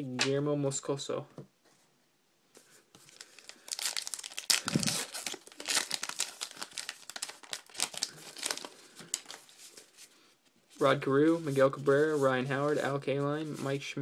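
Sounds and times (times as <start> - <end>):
wrapper tearing and crinkling: 3.1 - 9.5.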